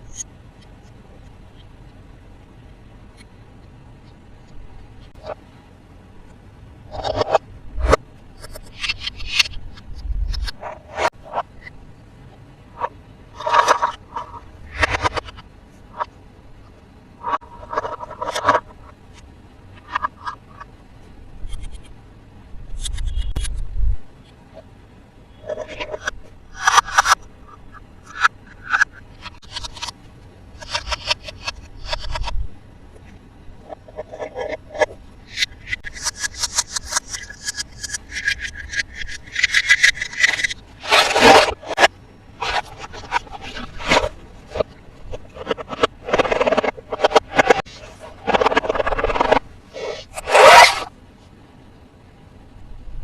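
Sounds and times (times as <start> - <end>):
toy packaging scraped by hand: 45.3 - 50.9.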